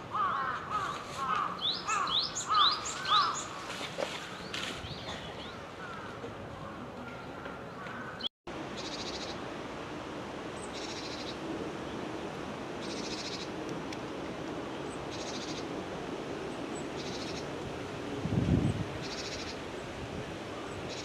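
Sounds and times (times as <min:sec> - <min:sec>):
background hiss: 0:08.5 - 0:21.0.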